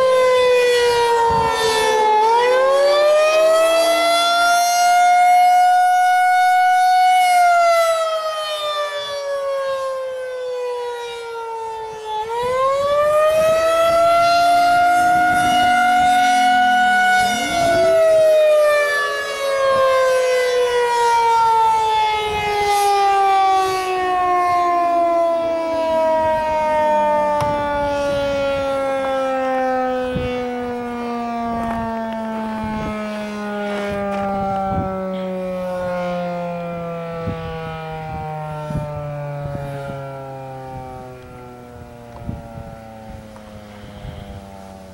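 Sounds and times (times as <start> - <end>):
civil defense siren wailing: 0.0 - 44.9
distant tornado sirens howling: 0.0 - 44.9.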